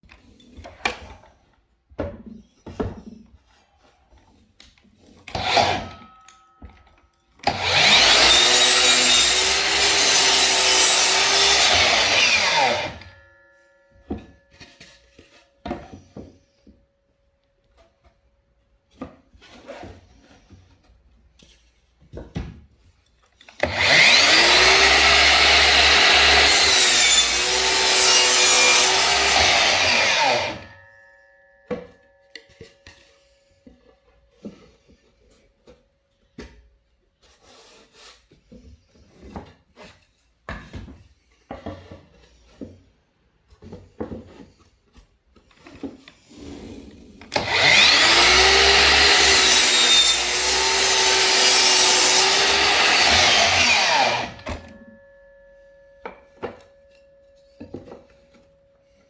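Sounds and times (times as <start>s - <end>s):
miter saw cutting wood: 5.3s - 6.1s, 7.4s - 13.1s, 23.6s - 30.8s, 47.3s - 54.8s.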